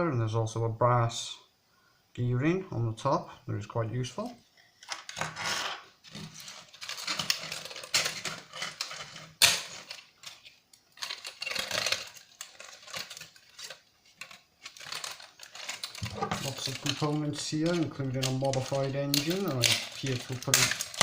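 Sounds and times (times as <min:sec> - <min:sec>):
plastic parts clicking and rattling: 0:06.0 - 0:21.0.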